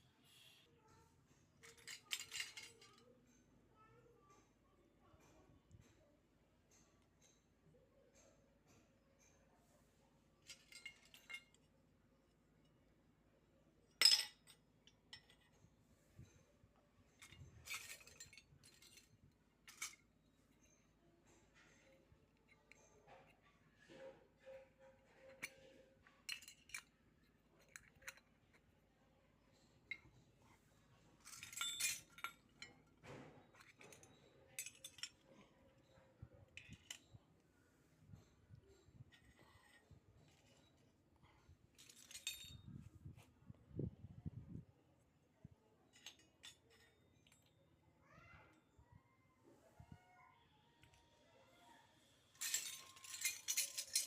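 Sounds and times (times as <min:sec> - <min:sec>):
toy pieces clicking and clinking: 0:01.6 - 0:03.0, 0:52.4 - 0:54.0
toy kitchen pieces clinking: 0:01.6 - 0:03.3, 0:10.4 - 0:11.7, 0:13.9 - 0:15.6, 0:17.1 - 0:23.4, 0:24.4 - 0:28.8, 0:31.2 - 0:37.2, 0:39.0 - 0:42.6, 0:45.9 - 0:47.6, 0:52.4 - 0:54.0.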